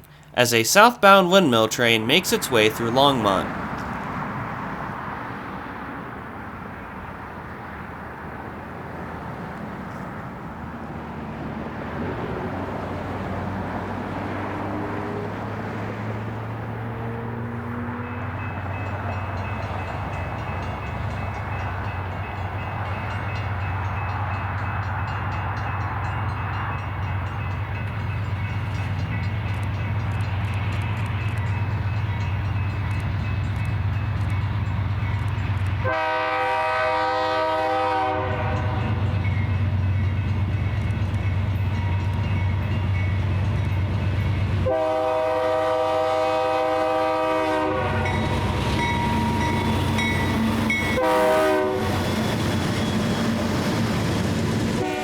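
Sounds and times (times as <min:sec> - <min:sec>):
diesel locomotive engines rumbling: 0:00.0 - 0:55.0
train air horn blasts: 0:35.8 - 0:39.1, 0:44.6 - 0:50.1, 0:50.7 - 0:52.2, 0:54.7 - 0:55.0.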